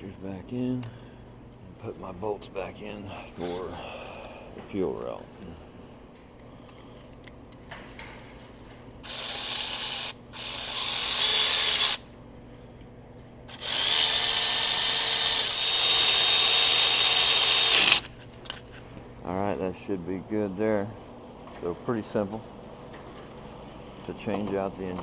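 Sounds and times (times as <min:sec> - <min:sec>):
power driver spinning bolts: 0:09.0 - 0:12.0, 0:13.5 - 0:18.1.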